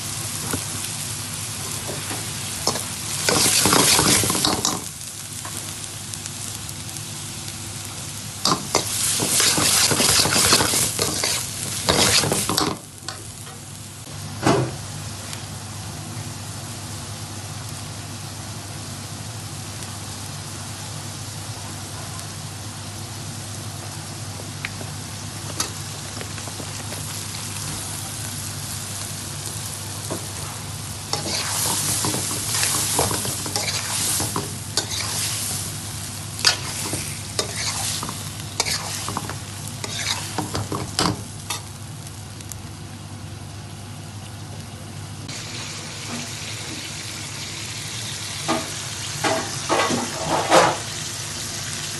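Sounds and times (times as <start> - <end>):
food sizzling in a pan: 0.0 - 44.4, 45.2 - 51.9
spoon scraping and stirring pan: 31.2 - 35.5, 36.4 - 40.6.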